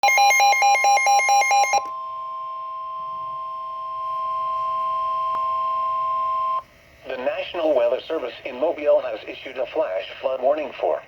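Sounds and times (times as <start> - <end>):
steady warning alarm tone: 0.0 - 6.6.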